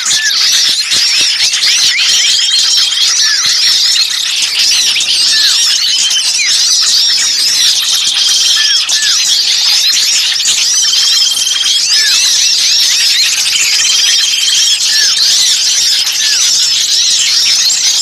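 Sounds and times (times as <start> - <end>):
downward-sweeping whistles: 0.0 - 17.9
buzzy bird trill: 0.0 - 18.0
songbirds chattering: 0.0 - 18.0.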